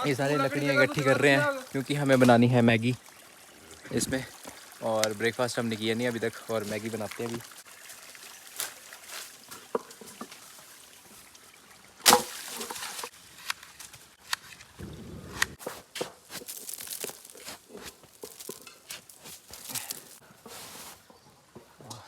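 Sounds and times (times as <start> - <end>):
rustling of sticks: 12.1 - 22.0
twigs snapping: 16.1 - 20.2.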